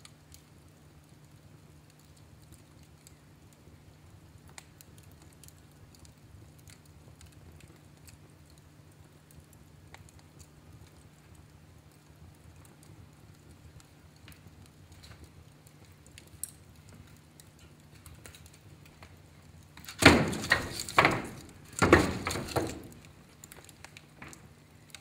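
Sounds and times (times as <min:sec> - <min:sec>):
fire crackling: 0:00.0 - 0:25.0.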